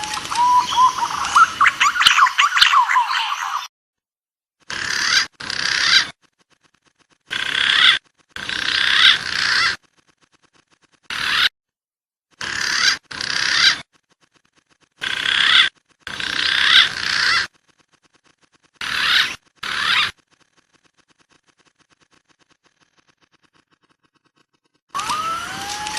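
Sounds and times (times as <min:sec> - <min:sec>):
pigeon calls: 0:00.0 - 0:03.7, 0:04.7 - 0:06.2, 0:06.8 - 0:09.9, 0:12.4 - 0:17.6, 0:18.2 - 0:23.1.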